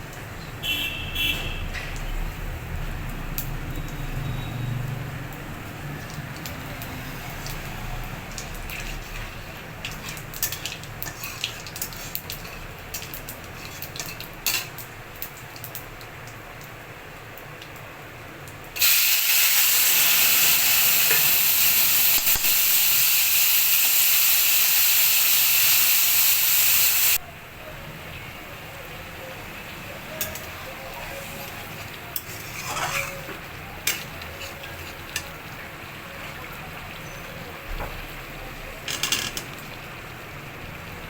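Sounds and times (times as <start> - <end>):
food sizzling in a pan: 1.6 - 18.0, 18.7 - 41.0
utensil stirring in a pan: 5.6 - 15.9, 30.2 - 37.4.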